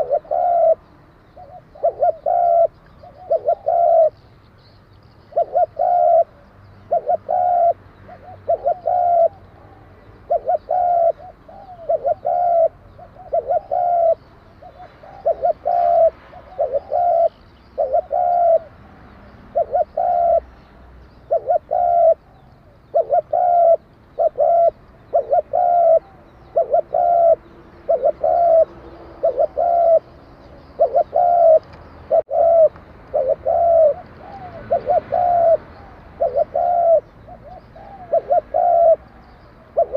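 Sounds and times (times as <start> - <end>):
dove cooing: 0.0 - 4.2, 5.3 - 18.9, 19.5 - 20.5, 21.2 - 39.9.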